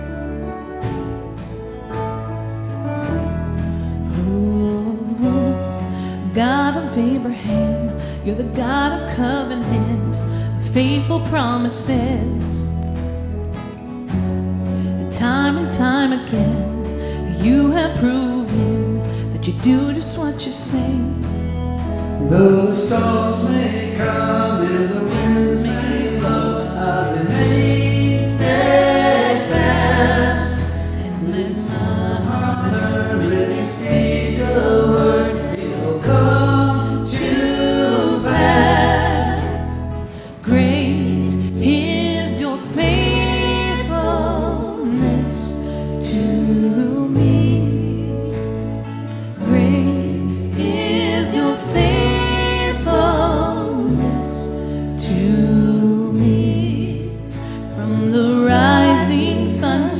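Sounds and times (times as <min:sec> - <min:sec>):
sustained bass notes: 0:00.0 - 0:59.9
worship band and singers: 0:13.5 - 0:59.9.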